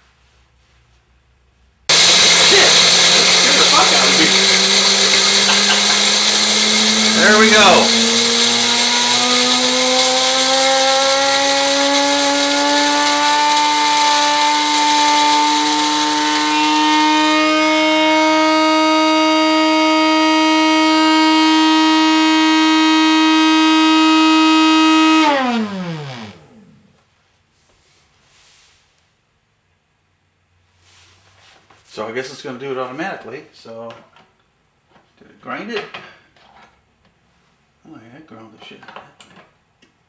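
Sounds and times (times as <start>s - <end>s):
coffee grinder motor whining: 1.9s - 26.9s.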